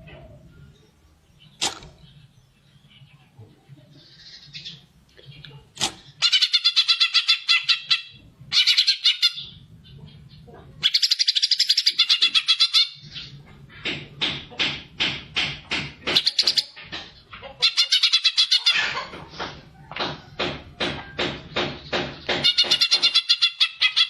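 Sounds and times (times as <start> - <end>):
bird singing trills: 6.1 - 13.4.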